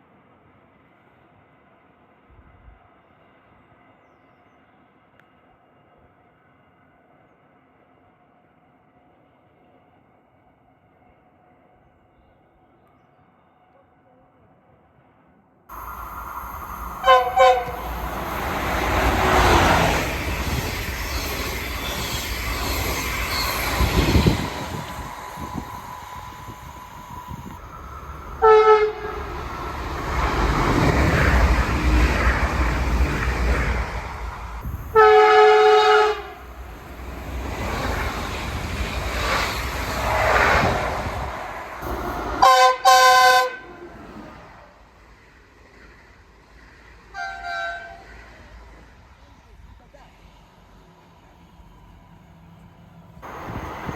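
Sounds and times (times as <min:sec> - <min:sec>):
train passing close by: 0:14.9 - 0:53.9
train horn blasts: 0:17.0 - 0:18.2, 0:28.4 - 0:29.4, 0:35.0 - 0:36.5, 0:42.4 - 0:43.7, 0:47.1 - 0:48.1.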